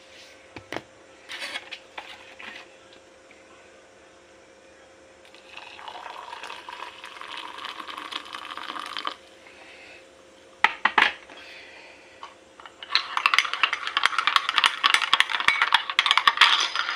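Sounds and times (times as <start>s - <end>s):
dishes clinking and rattling: 12.6s - 16.9s.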